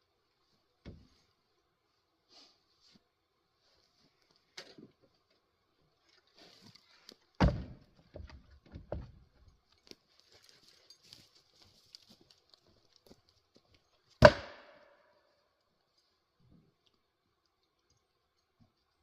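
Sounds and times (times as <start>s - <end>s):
axe striking wood: 7.4s - 7.8s, 14.2s - 15.0s.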